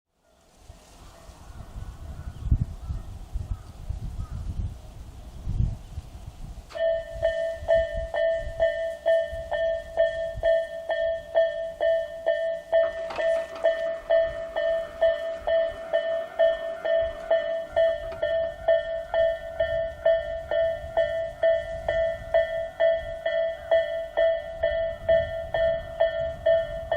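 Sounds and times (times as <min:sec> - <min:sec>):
level crossing alarm dinging: 0:06.7 - 0:26.9.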